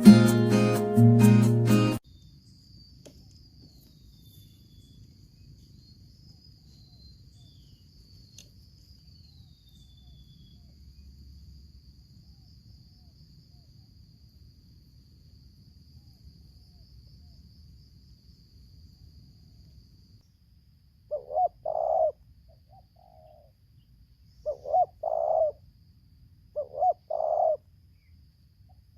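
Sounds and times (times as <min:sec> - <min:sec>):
background music: 0:00.0 - 0:02.0
high insect trill: 0:02.0 - 0:28.9.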